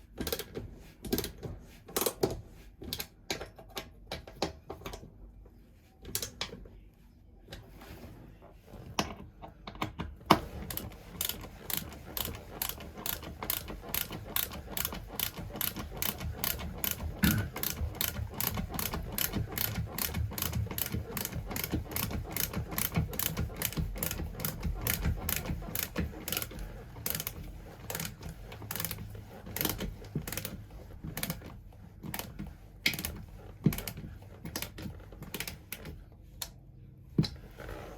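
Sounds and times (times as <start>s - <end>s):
steady mechanical clicking: 10.3s - 36.5s.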